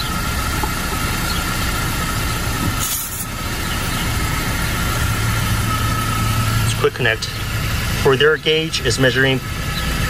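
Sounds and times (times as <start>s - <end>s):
car engine idling: 0.0s - 10.0s
hiss of tyre air: 2.7s - 4.0s.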